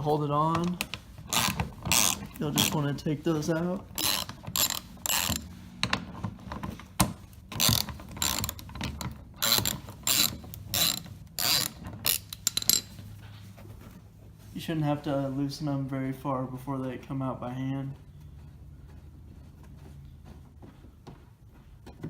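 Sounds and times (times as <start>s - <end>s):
ratchet wrench clicking: 1.3s - 2.7s, 4.0s - 5.5s, 7.6s - 8.7s, 9.4s - 12.9s.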